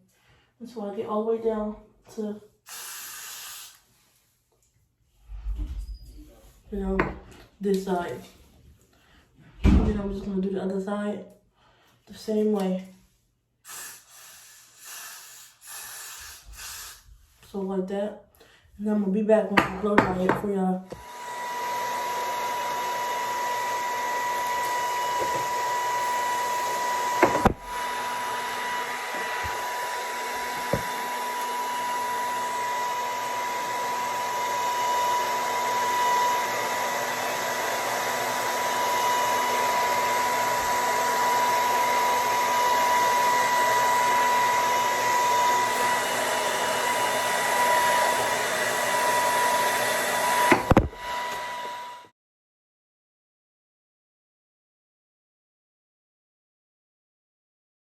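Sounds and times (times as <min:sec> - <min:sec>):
blow dryer whining: 0:19.6 - 0:52.1.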